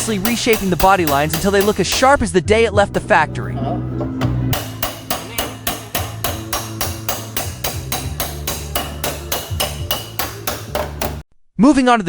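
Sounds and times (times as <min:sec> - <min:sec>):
hammer tapping on sheet metal: 0:00.0 - 0:02.2, 0:04.0 - 0:11.2
background music: 0:00.0 - 0:11.2.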